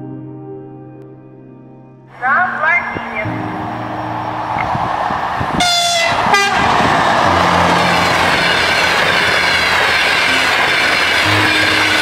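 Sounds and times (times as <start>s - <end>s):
train passing at speed: 2.1s - 12.0s
train horn blast: 5.5s - 12.0s.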